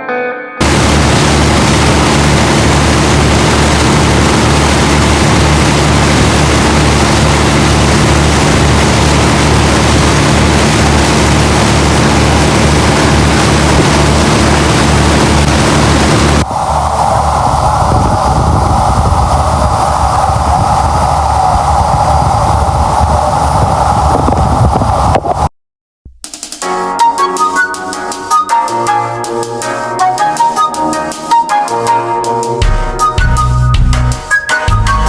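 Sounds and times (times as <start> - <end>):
motor engine running: 0.6 - 25.5.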